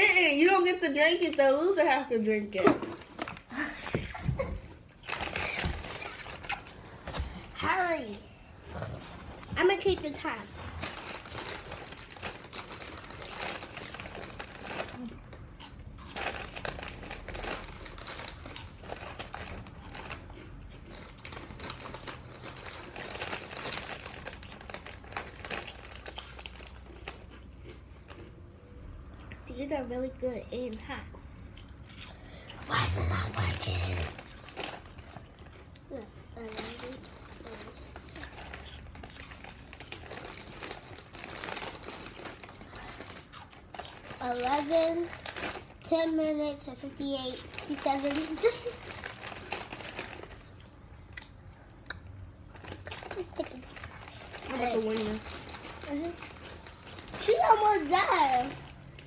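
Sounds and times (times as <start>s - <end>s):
snack bag crinkling: 4.8s - 7.3s, 8.1s - 28.4s, 31.6s - 59.0s
crunchy snacks being eaten: 10.3s - 28.4s, 31.6s - 46.2s, 47.3s - 59.0s.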